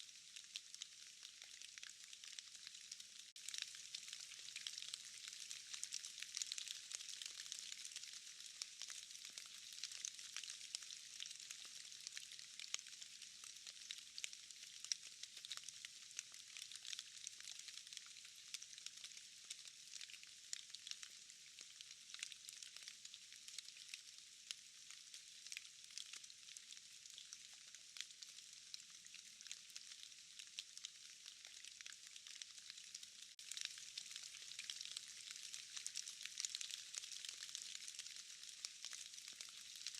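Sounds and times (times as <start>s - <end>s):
steady rain hiss: 0.0s - 15.6s.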